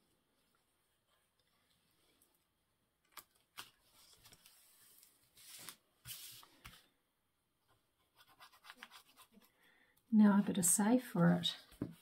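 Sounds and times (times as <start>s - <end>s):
paper rustling: 3.1s - 6.8s.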